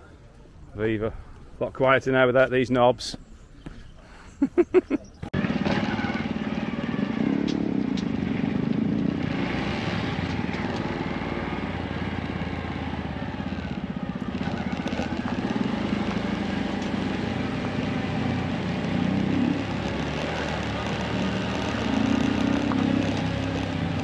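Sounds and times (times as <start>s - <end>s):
motorcycle engine running: 5.4s - 24.0s.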